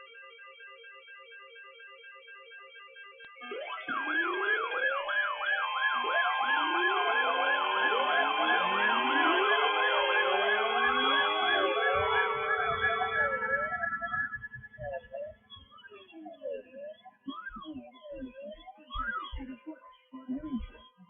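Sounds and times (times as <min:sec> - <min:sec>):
sirens wailing: 0:03.4 - 0:15.4.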